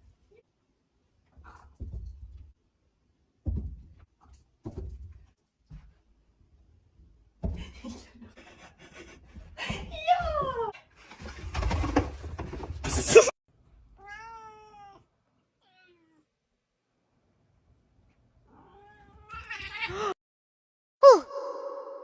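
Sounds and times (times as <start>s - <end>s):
cat meowing: 14.0s - 16.3s, 18.5s - 20.2s.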